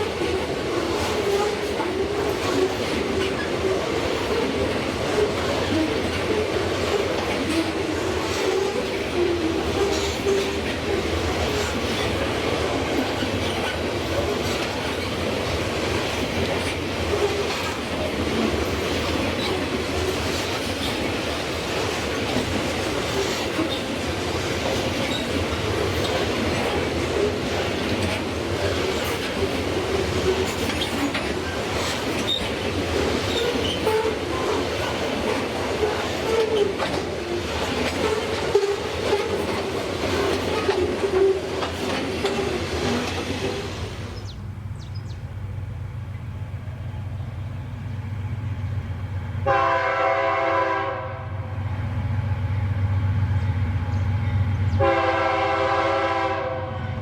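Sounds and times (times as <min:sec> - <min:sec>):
train wheels clattering on rails: 0:00.0 - 0:50.8
diesel locomotive rumbling: 0:00.0 - 0:57.0
train air horn blasts: 0:49.4 - 0:51.5, 0:54.8 - 0:57.0.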